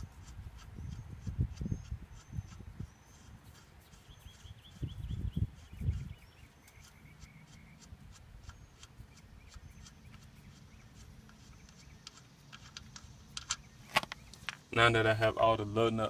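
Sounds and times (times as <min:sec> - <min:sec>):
bird chirping: 0:00.0 - 0:16.0
faint outdoor background: 0:00.0 - 0:16.0.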